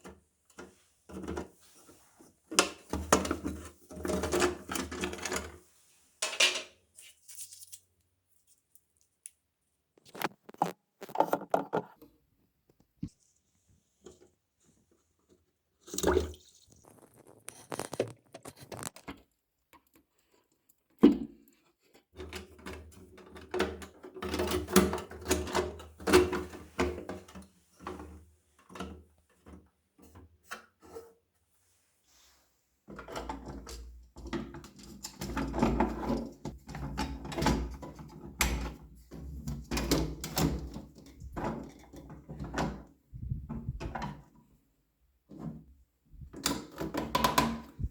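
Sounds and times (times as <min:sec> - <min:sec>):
plastic parts clicking and knocking: 0:10.0 - 0:12.1, 0:46.2 - 0:47.9.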